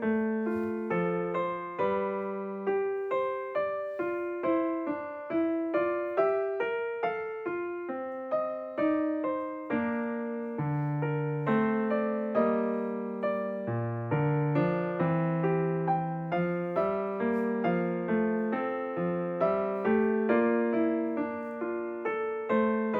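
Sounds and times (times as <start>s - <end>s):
solo piano music: 0.0s - 22.9s.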